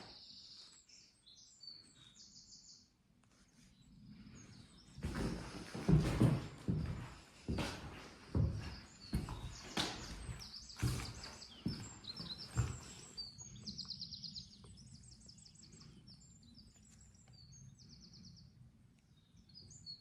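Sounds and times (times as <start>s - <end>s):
birds singing trills: 0.0s - 2.9s, 8.4s - 20.0s
footsteps: 5.0s - 13.2s.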